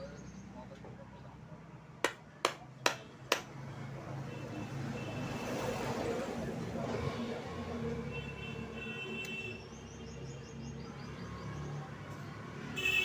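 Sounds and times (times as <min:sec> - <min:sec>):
vehicle noise: 0:02.6 - 0:13.0.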